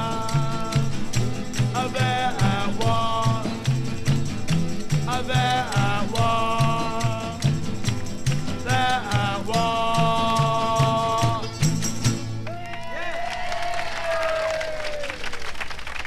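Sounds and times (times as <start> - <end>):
bass line: 0.0 - 12.3
guitar: 0.0 - 13.0.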